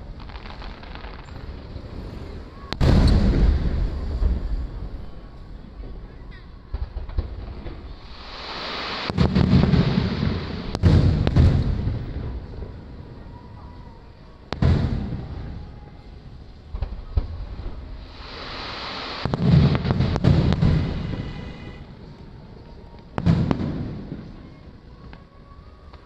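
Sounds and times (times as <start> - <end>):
firework shells booming: 0.0 - 12.8, 16.7 - 22.2.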